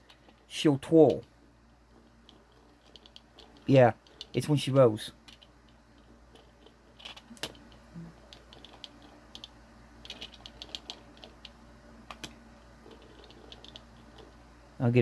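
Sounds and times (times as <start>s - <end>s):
small plastic toy clicking: 6.6s - 12.3s.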